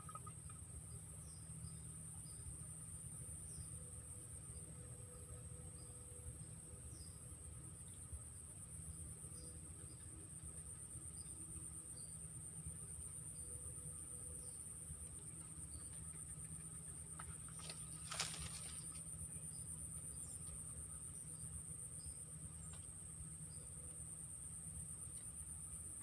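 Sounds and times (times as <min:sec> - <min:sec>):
insects droning: 0:00.0 - 0:26.0
short insect chirps: 0:11.2 - 0:25.6
brief rustle: 0:17.5 - 0:19.0.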